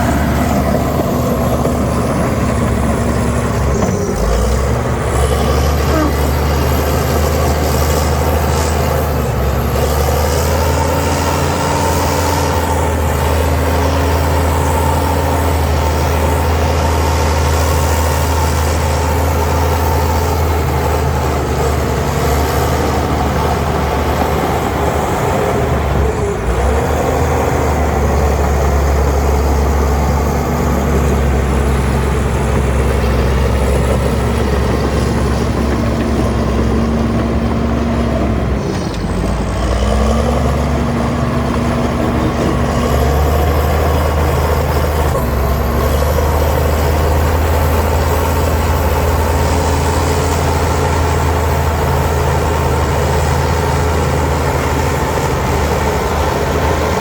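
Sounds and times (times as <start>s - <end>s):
heavy diesel engine droning: 0.0s - 57.0s.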